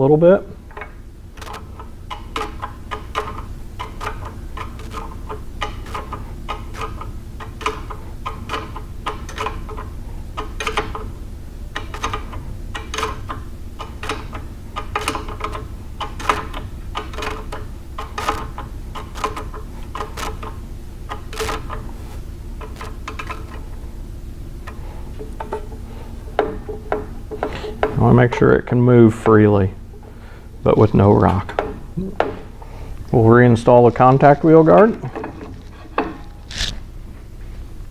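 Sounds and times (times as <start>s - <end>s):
steady low hum: 0.0s - 37.9s
wrench clicking: 0.7s - 21.8s, 22.6s - 23.8s, 36.0s - 36.8s.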